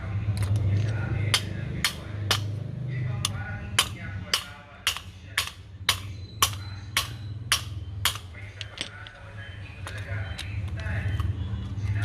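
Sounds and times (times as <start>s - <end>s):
hammer striking steel: 1.3s - 2.6s, 3.2s - 8.4s.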